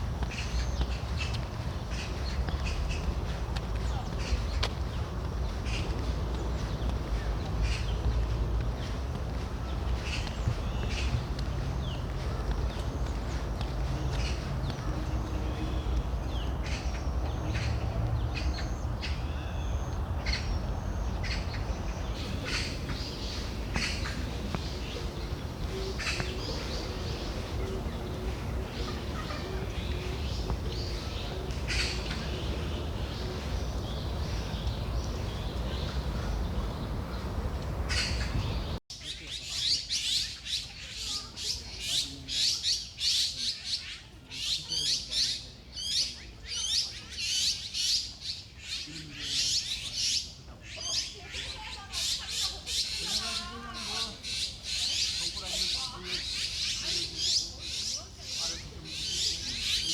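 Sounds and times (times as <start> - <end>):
birds chirping: 0.0 - 39.4
dense rapid birdsong: 0.0 - 59.9
low outdoor rumble: 5.7 - 38.8.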